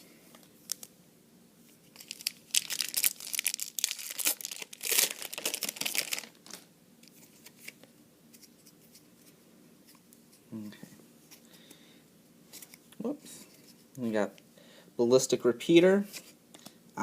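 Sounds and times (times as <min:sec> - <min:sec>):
wrapper tearing and crinkling: 0:02.0 - 0:06.6.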